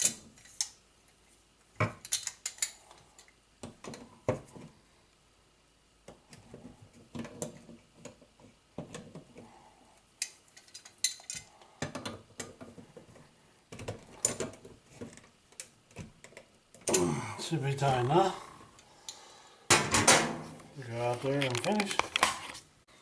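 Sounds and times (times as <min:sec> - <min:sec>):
metallic clicks and rattles: 0:02.0 - 0:04.0, 0:10.2 - 0:12.7.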